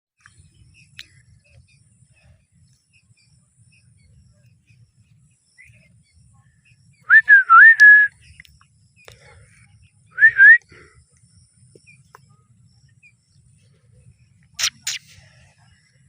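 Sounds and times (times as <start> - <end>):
parrot chirping: 14.6 - 15.1.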